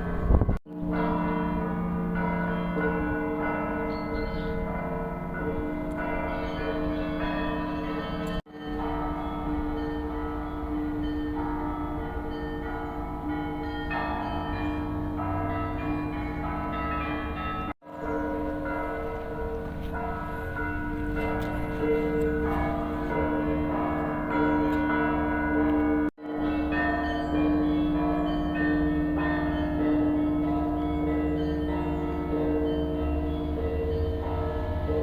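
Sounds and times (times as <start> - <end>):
church bells ringing: 0.0 - 35.0.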